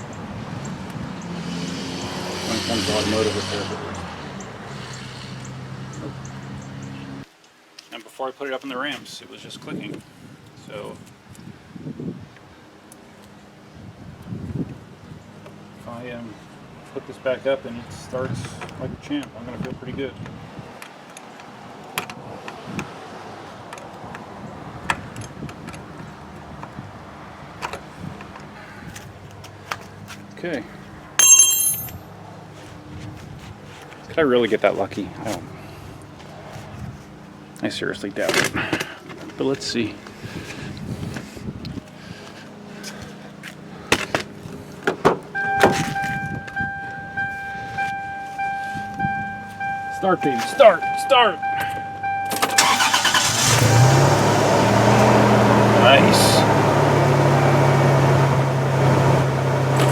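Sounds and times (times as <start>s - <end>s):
hand tools clinking on metal: 31.2s - 32.1s
truck door and cab clicks: 44.9s - 47.0s, 51.4s - 53.3s
pulsing electronic warning chime: 45.4s - 52.8s.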